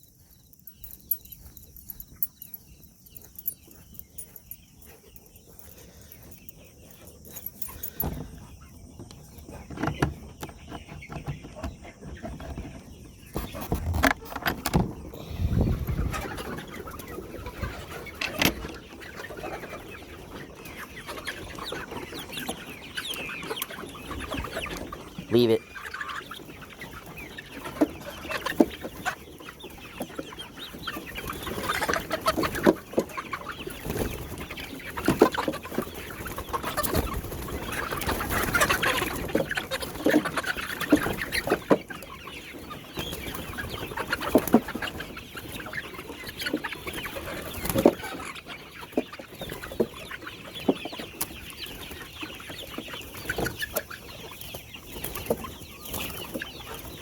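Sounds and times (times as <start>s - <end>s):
chickens clucking: 0.0s - 57.0s.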